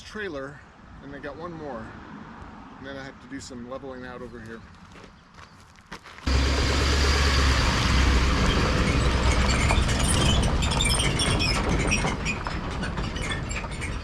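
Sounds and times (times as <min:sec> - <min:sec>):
tractor engine running: 0:06.3 - 0:14.0
clattering and rattling: 0:08.3 - 0:14.0.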